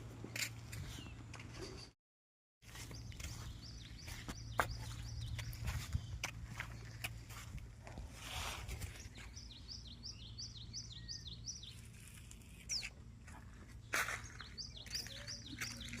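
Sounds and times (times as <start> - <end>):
bird chirping: 2.7 - 7.1, 8.8 - 13.0, 13.8 - 16.0.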